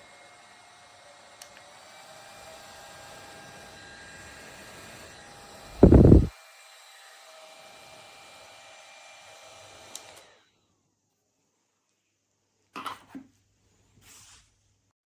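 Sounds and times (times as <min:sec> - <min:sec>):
handheld fan running: 0:05.7 - 0:06.3
low rumbling bump: 0:05.8 - 0:06.3.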